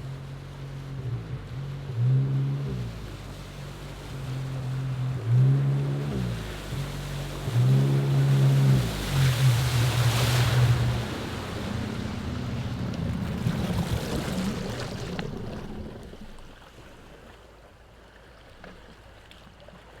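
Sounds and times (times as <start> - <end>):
jet ski engine revving: 0.0 - 16.9
water wash hissing: 3.6 - 16.6.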